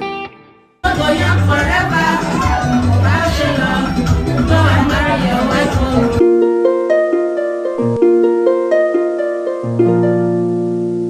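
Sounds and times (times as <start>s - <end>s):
dance track: 0.8s - 6.2s
plucked harp-like melody: 4.2s - 11.0s.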